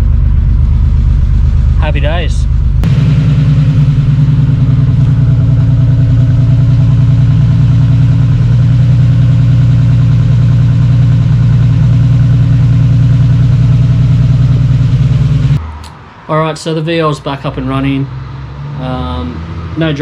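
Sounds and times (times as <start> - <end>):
turbocharged car engine idling: 0.0 - 15.9.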